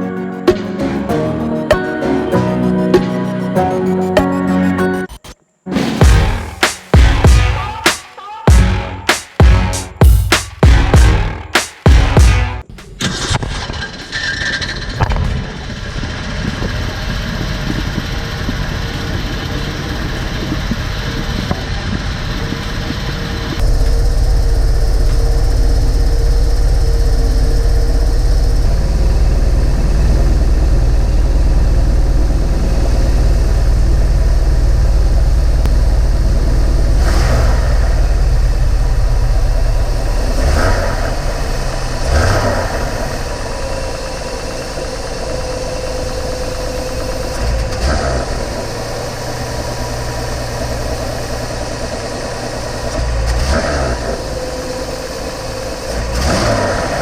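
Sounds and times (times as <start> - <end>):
engine idling: 14.6 - 57.0.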